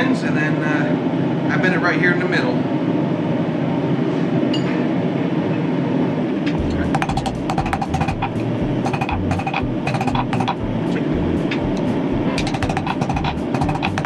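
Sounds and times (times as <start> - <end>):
hammer blows on anvil: 6.6 - 14.0.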